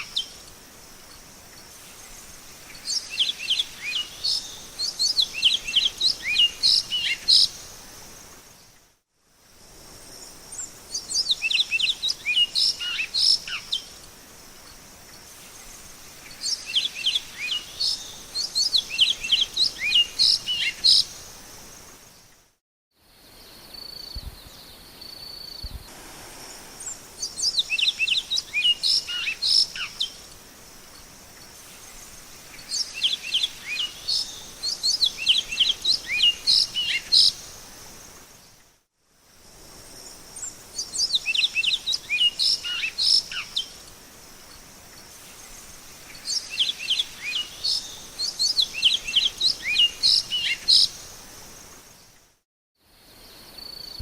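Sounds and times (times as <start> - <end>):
insects hissing: 0.0 - 22.4, 25.0 - 38.6, 39.2 - 52.3
bird whistling song: 2.9 - 7.5, 26.8 - 30.2, 32.7 - 37.5, 40.8 - 43.7, 46.2 - 51.0.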